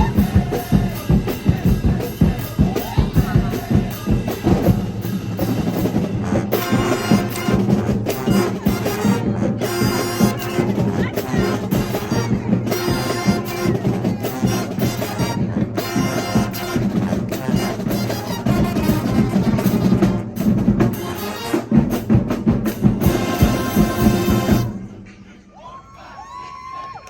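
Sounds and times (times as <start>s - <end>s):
bass drum beat: 0.0s - 24.9s
marching band playing: 0.0s - 25.5s
brass sustained chords: 4.7s - 22.1s, 23.0s - 25.1s.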